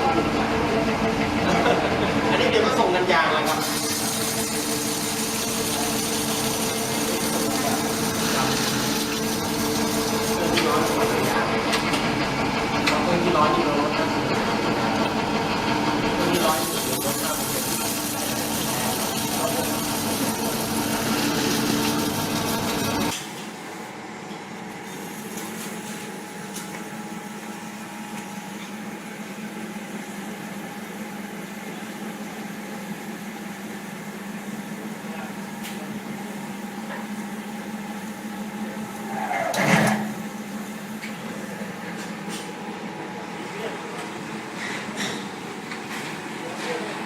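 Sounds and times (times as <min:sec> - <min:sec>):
cutting machine humming: 0:00.0 - 0:23.2.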